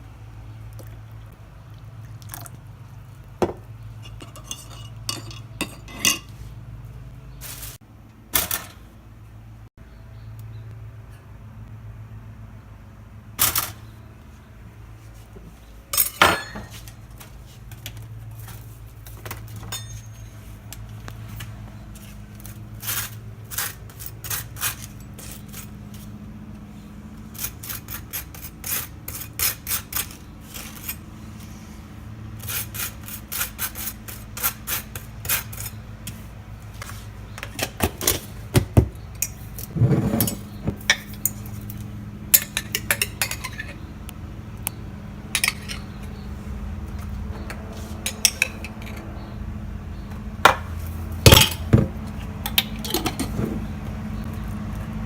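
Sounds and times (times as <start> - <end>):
cutlery and crockery clinking: 4.0 - 6.4, 15.9 - 16.8, 19.6 - 20.4, 42.4 - 43.8, 45.4 - 46.2, 48.0 - 49.0, 51.3 - 53.6.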